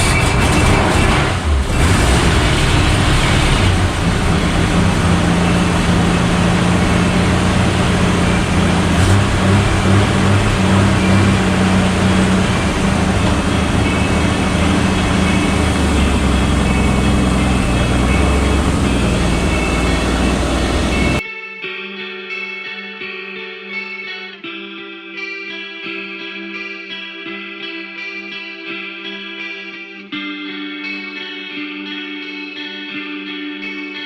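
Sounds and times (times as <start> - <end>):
car engine running: 0.0 - 21.2.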